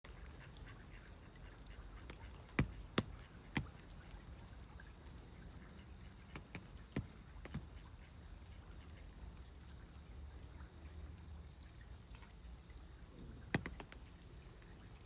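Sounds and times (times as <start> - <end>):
rain hissing on an umbrella: 2.0 - 9.4.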